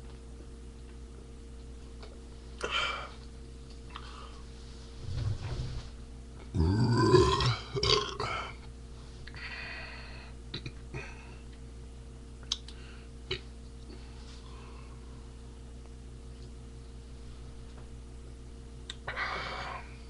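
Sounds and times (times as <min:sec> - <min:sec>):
man burping: 0:06.5 - 0:08.6.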